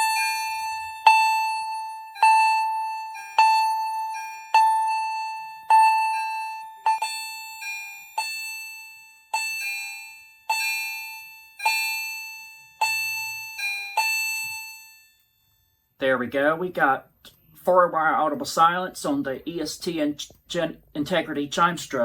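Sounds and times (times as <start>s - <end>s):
electronic fire alarm chime: 0.0s - 15.9s.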